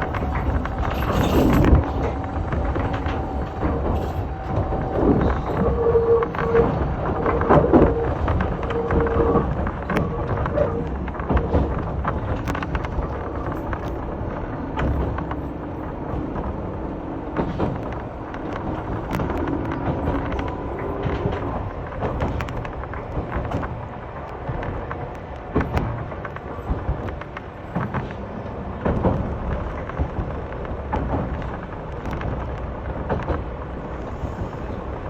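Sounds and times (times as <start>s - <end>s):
humming tone: 0.0s - 11.7s
train wheels rumbling on rail: 0.0s - 35.0s.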